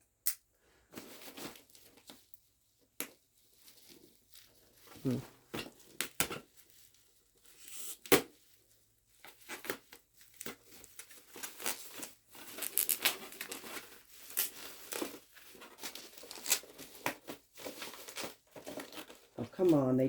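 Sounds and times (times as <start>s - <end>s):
bubble wrap crinkling: 0.9s - 20.0s
packing tape tearing: 7.5s - 8.4s, 9.2s - 19.3s.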